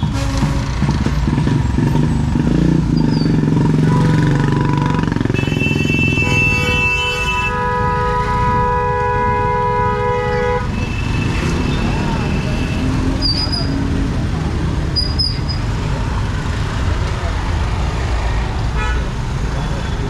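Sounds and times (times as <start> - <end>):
vehicle horn blast: 0.0 - 0.8, 3.8 - 11.9, 18.8 - 19.0
street traffic: 0.0 - 20.0.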